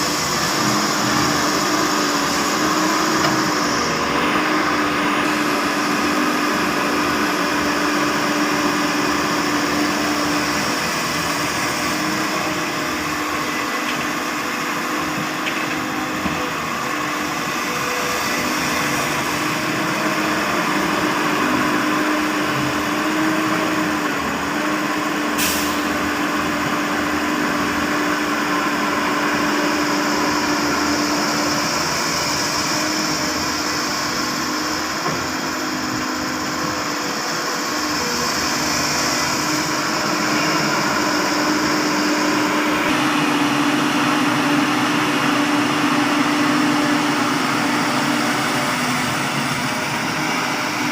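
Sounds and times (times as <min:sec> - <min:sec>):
diesel excavator engine running: 0:00.0 - 0:50.9.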